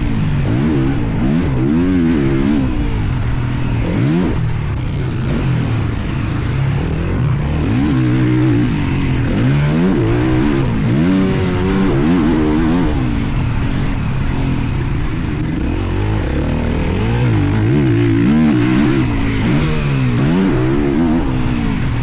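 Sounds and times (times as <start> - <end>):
motocross bike engine revving: 0.0 - 22.0.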